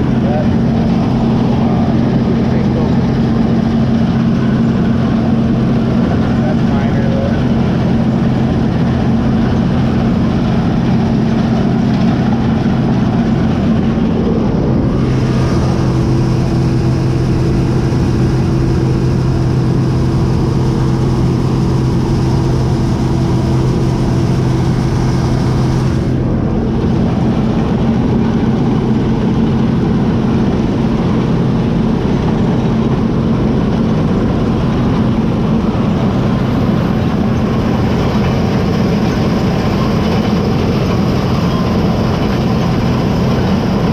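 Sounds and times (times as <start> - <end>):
combine engine low hum: 0.0 - 43.9.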